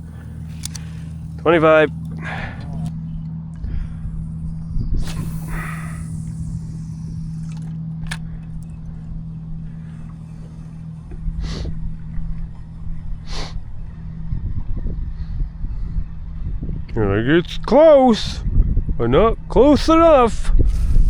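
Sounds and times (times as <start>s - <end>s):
boat motor humming: 0.0s - 21.0s
wind rumble on microphone: 0.0s - 21.0s
short hissing noises: 5.0s - 8.3s, 9.8s - 11.8s, 13.2s - 13.6s, 20.4s - 21.0s.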